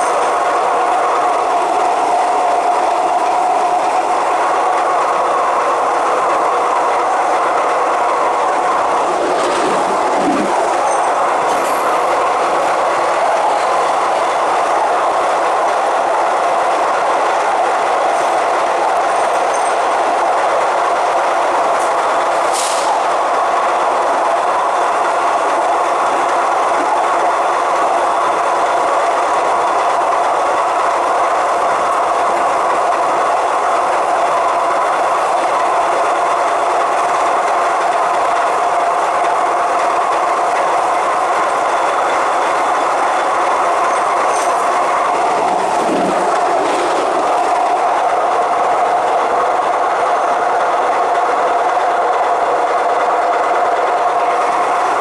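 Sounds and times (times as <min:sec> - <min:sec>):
train rail rumble: 0:00.0 - 0:55.0
train motor whine: 0:21.4 - 0:55.0
brief high hiss: 0:22.5 - 0:23.0.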